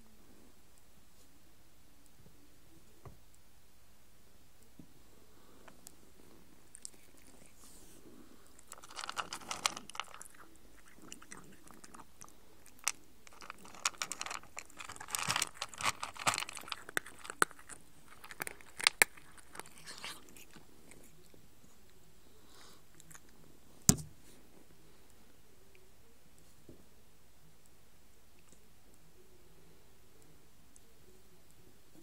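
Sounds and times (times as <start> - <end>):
cat chewing food: 5.4 - 23.7.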